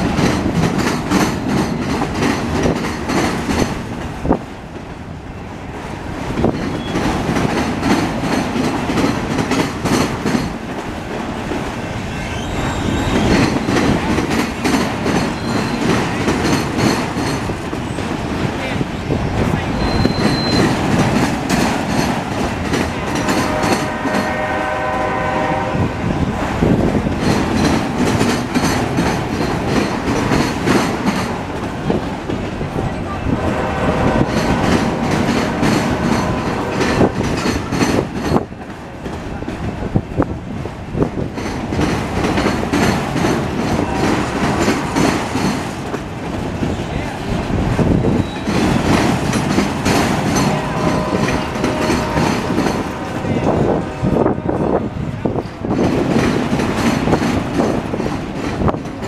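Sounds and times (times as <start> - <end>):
freight train wheels clacking: 0.0 - 59.0
train horn chord: 22.9 - 26.1, 33.3 - 37.1, 50.4 - 54.8.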